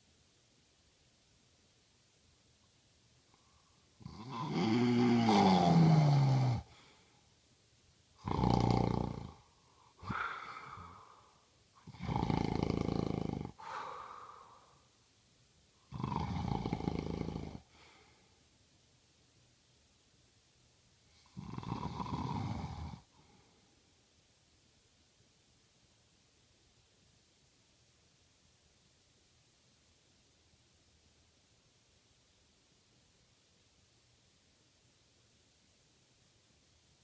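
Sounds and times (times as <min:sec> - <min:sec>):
quiet breath out: 0:03.3 - 0:04.0, 0:06.5 - 0:07.3, 0:09.4 - 0:11.5, 0:13.5 - 0:15.0, 0:17.6 - 0:18.5, 0:23.0 - 0:23.8
man snoring loudly: 0:04.0 - 0:06.7, 0:08.2 - 0:09.4, 0:10.0 - 0:11.0, 0:11.8 - 0:14.0, 0:15.9 - 0:17.7, 0:21.2 - 0:23.1.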